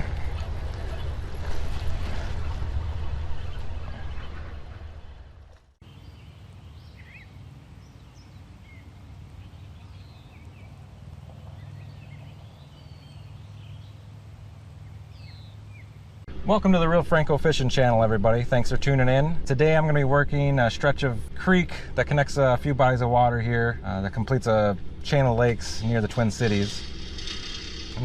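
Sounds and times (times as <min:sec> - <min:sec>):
loud rushing rumble: 0:00.0 - 0:05.5
steady low hum: 0:00.0 - 0:28.0
small birds chirping: 0:05.8 - 0:16.2.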